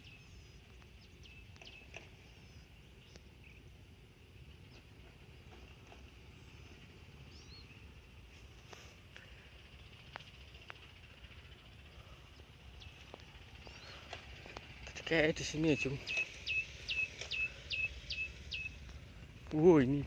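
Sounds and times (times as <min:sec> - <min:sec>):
bird chirps: 0:00.0 - 0:05.0, 0:06.8 - 0:08.2, 0:09.6 - 0:14.8, 0:15.4 - 0:19.2
insects chirring: 0:00.0 - 0:20.0
faint clicks: 0:00.7 - 0:02.2.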